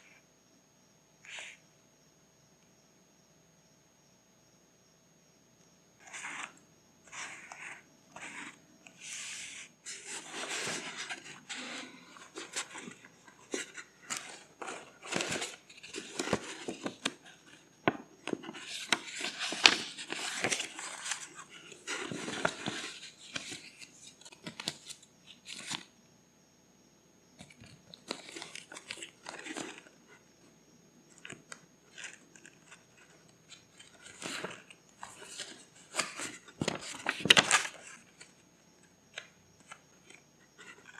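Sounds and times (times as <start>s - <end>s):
paper rustling and crinkling: 6.0s - 25.9s, 27.4s - 30.0s, 31.1s - 38.4s.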